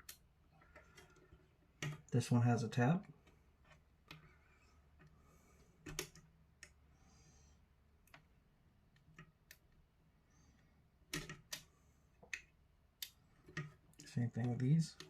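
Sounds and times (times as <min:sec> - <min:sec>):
small plastic clicks and taps: 0:05.8 - 0:06.8, 0:08.0 - 0:08.3, 0:11.1 - 0:15.0.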